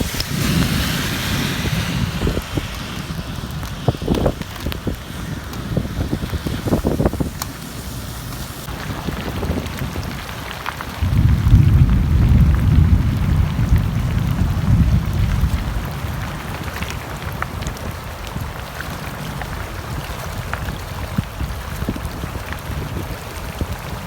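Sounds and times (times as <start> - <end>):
rain falling: 0.0 - 24.0
low rumble of thunder: 8.7 - 24.0.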